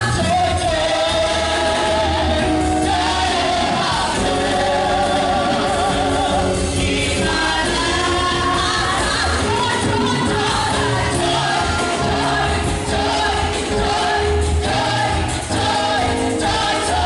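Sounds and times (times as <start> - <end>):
church choir singing gospel: 0.0 - 17.0.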